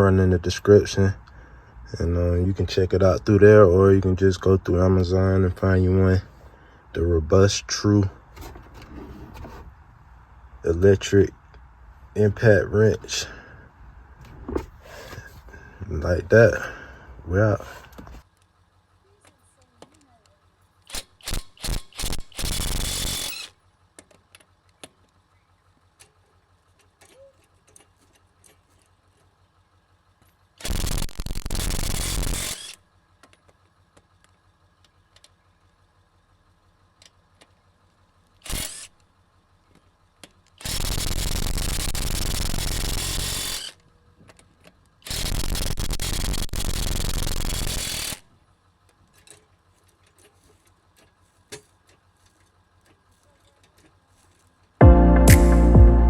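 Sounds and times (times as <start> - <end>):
faint clicks and handling noise: 17.8 - 20.9, 23.8 - 30.6, 33.1 - 35.8, 36.8 - 40.6, 43.8 - 45.0, 48.7 - 54.8
electric impact wrench running: 20.9 - 23.5, 30.6 - 32.8, 38.4 - 38.9, 40.6 - 43.8, 45.0 - 48.3.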